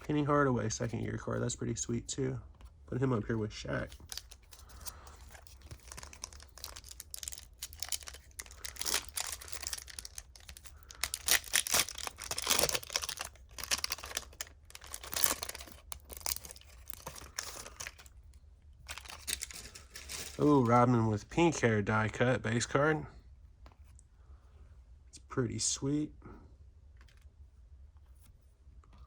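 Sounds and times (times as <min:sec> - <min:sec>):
foil packaging crinkling: 0:03.8 - 0:18.1, 0:18.8 - 0:20.7.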